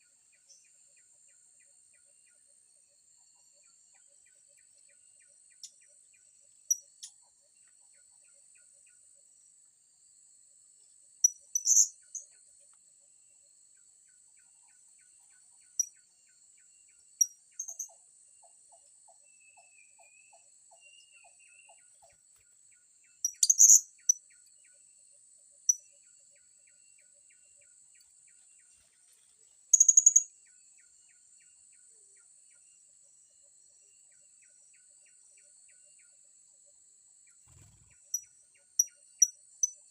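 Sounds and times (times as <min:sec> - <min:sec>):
insect drone: 0:19.1 - 0:39.9.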